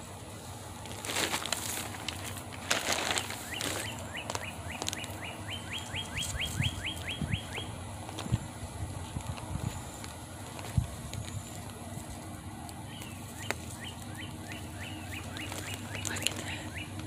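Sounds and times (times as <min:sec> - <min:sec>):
bird singing rising notes: 0:03.2 - 0:07.8, 0:12.8 - 0:17.0.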